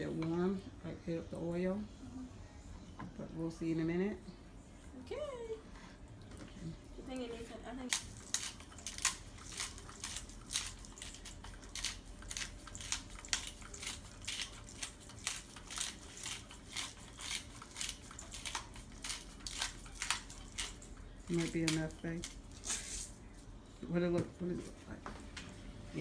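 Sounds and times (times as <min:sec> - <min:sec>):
pepper grinder crunching: 0:07.8 - 0:23.1.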